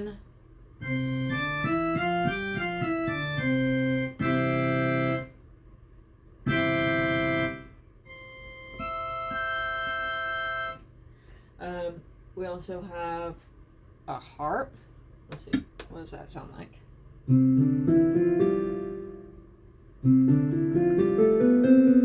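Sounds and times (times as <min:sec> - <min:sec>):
church organ chords: 0:00.8 - 0:05.3, 0:06.5 - 0:10.8.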